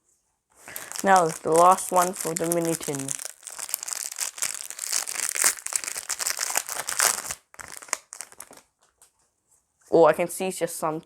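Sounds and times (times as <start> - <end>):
foil wrapper crinkling and tearing: 0.6 - 8.8.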